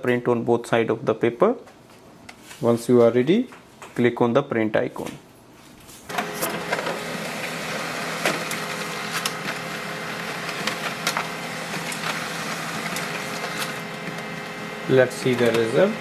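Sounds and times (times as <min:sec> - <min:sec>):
laser printer whirring: 0:06.1 - 0:16.0
paper feed clicks: 0:06.1 - 0:16.0.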